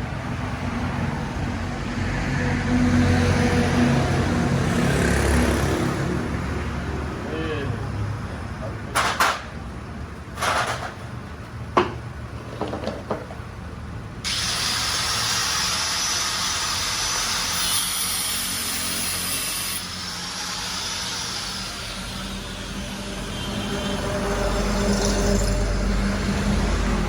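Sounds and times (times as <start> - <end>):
machinery hissing: 14.2 - 27.0.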